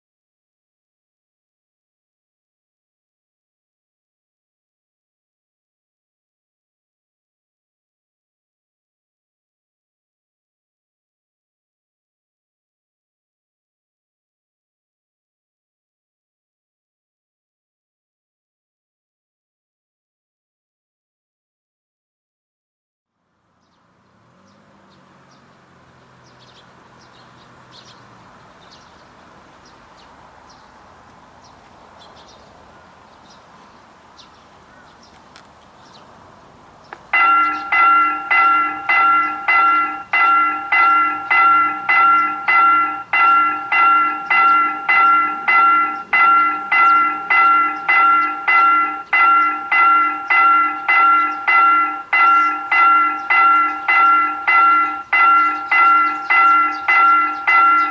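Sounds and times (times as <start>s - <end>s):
light bird chirps: 23.3s - 41.1s, 43.3s - 57.9s
level crossing bell ringing: 37.2s - 57.9s.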